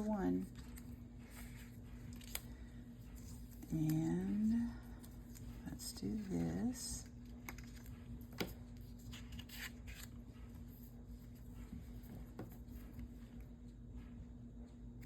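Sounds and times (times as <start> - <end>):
faint steady hum: 0.0 - 15.0
paper rustling: 7.2 - 13.1.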